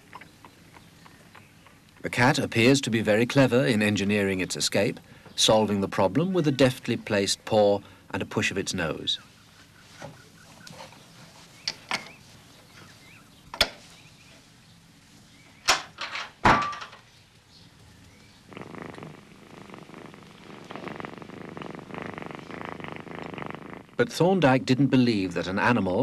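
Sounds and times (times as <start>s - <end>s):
cat purring: 0.0s - 9.2s, 17.3s - 24.2s.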